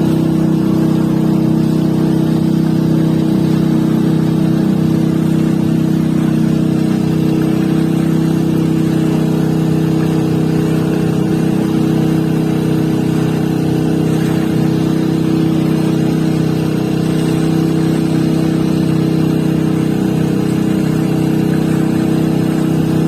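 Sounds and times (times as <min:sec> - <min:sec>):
motor running steadily: 0:00.0 - 0:23.0.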